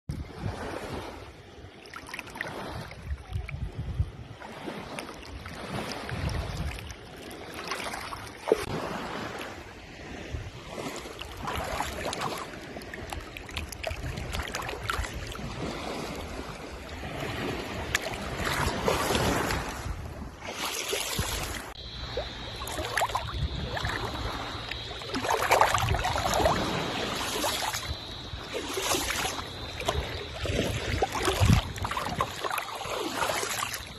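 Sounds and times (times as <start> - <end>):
wind on microphone: 0.1 - 1.4, 2.4 - 33.9
waves splashing at shore: 0.1 - 33.9
faint high whine: 20.7 - 33.9.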